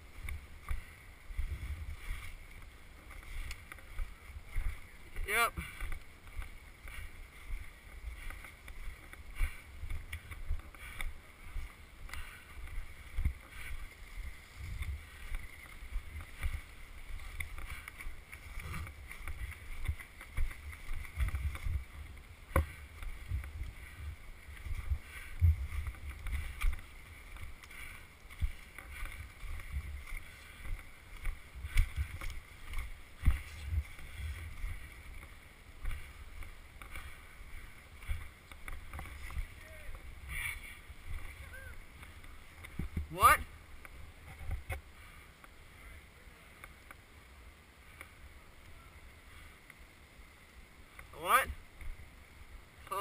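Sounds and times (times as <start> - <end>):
footsteps on wet snow: 0.0 - 47.1.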